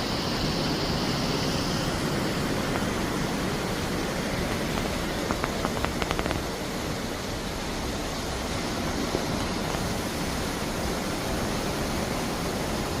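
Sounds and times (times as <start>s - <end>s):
sea water rushing past hull: 0.0s - 13.0s
faint clicks: 4.5s - 6.5s.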